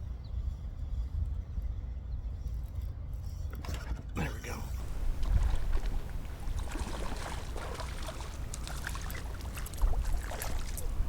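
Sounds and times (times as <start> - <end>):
water trickling and splashing: 4.8 - 11.0.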